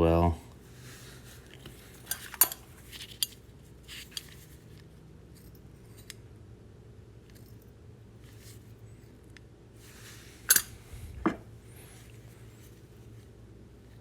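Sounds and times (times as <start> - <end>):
metal tools clicking: 10.5 - 10.8.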